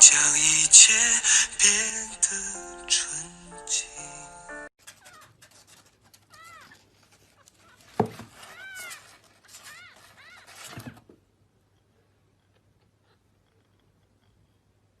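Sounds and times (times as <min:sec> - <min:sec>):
cat meowing: 0:08.4 - 0:10.6.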